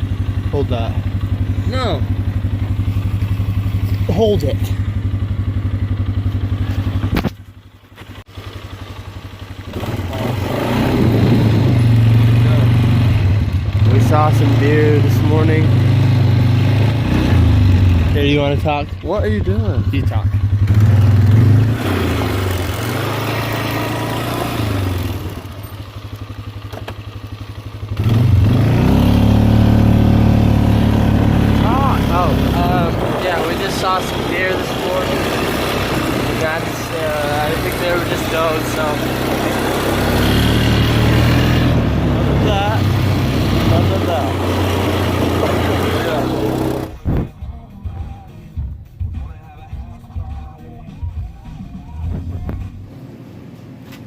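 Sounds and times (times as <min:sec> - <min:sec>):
atv engine idling: 0:00.0 - 0:11.0, 0:17.5 - 0:47.2.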